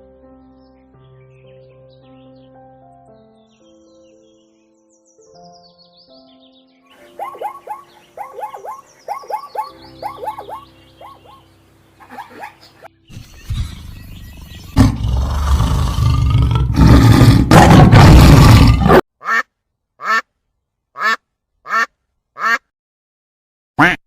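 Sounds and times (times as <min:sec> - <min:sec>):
faint chirping: 0:03.5 - 0:16.0
loud rough animal noise: 0:12.0 - 0:19.0
short duck-like calls: 0:19.2 - 0:20.2, 0:21.0 - 0:22.7, 0:23.8 - 0:24.0.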